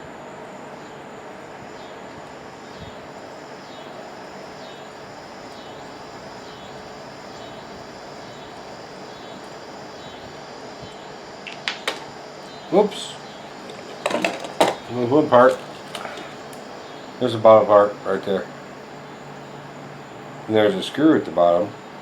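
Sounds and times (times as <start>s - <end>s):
workshop background hiss: 0.0s - 22.0s
tool knocking on workbench: 14.0s - 14.9s.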